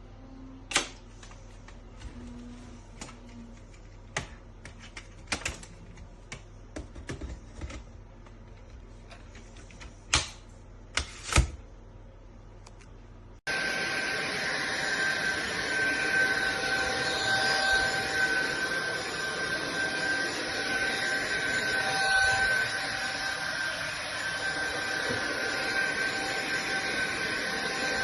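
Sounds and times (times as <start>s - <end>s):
vacuum cleaner motor whining: 13.5s - 28.0s.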